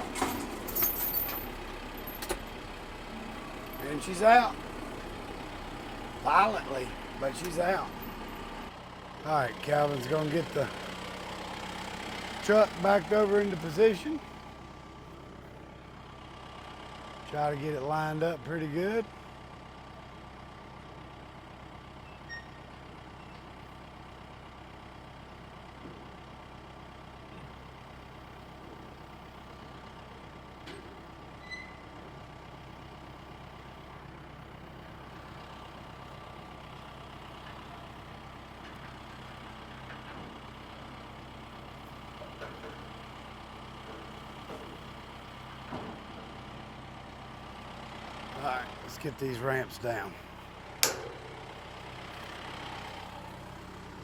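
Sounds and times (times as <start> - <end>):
truck engine running: 0.0 - 54.0.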